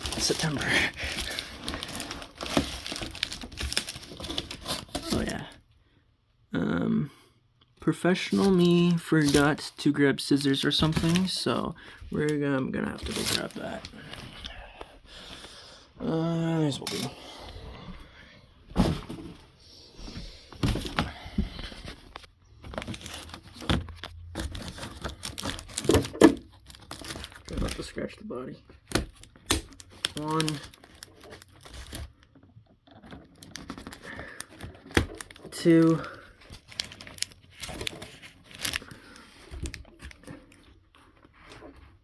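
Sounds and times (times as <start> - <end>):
plastic packaging crinkling and tearing: 0.0 - 5.6, 8.2 - 14.6, 21.8 - 28.2, 28.8 - 41.7.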